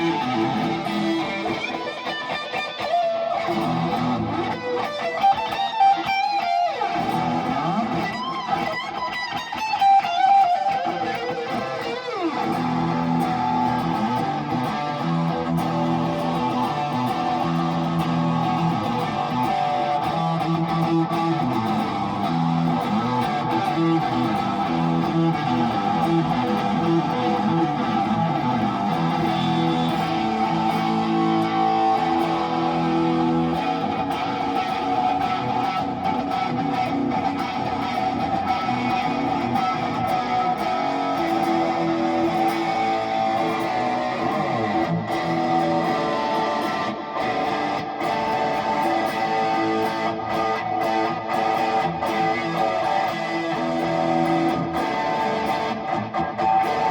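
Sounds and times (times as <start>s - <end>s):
electric guitar through amplifier: 0.0s - 56.9s.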